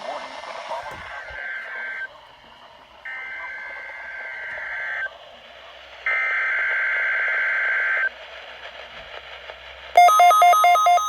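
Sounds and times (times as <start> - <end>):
two-tone data bursts: 10.0 - 11.0.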